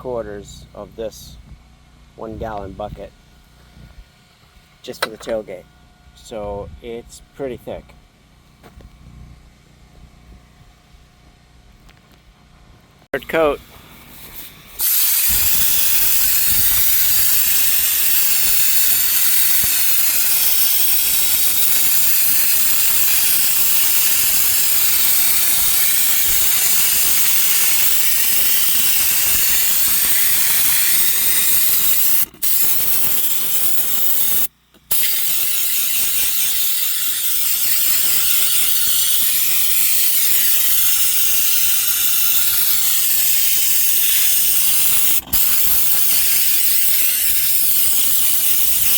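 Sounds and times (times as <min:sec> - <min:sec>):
spray gun hissing: 0:14.0 - 0:48.9.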